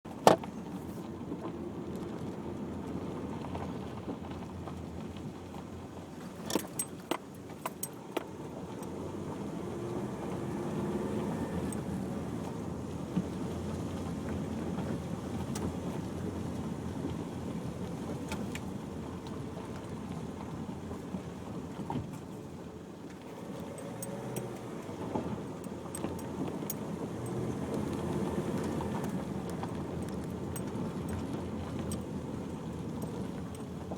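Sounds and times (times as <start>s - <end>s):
car engine and road noise: 0.0s - 33.9s
clicks and rattles: 6.2s - 8.4s.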